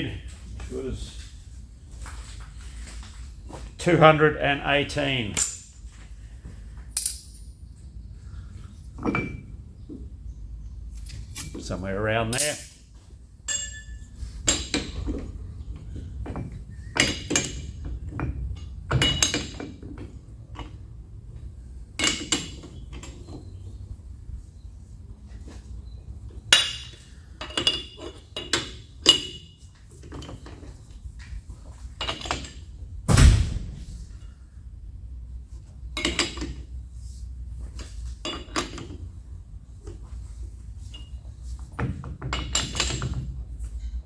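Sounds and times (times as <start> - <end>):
steel tools clinking and knocking: 7.0 - 7.4, 13.5 - 15.2
heavy thud: 33.1 - 34.2.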